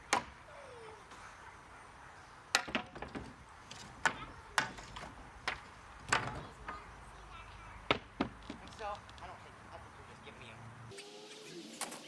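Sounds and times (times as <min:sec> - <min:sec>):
boards and debris knocking: 0:02.5 - 0:06.8, 0:07.9 - 0:08.9.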